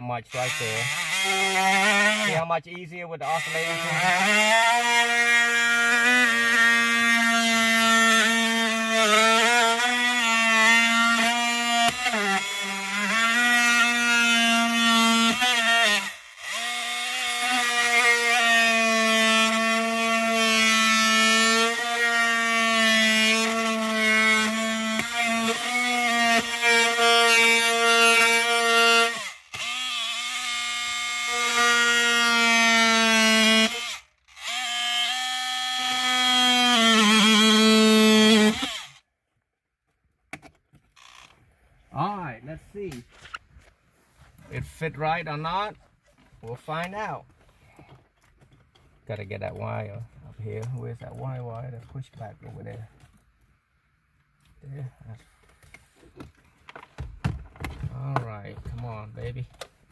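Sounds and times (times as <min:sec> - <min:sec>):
oscillating multi-tool buzzing: 0:00.4 - 0:02.4, 0:03.2 - 0:39.0, 0:41.0 - 0:41.3.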